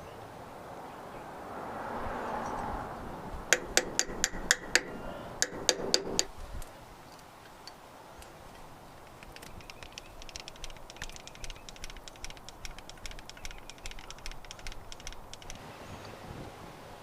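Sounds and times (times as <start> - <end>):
hand tool tapping: 3.5 - 6.3, 9.1 - 15.6.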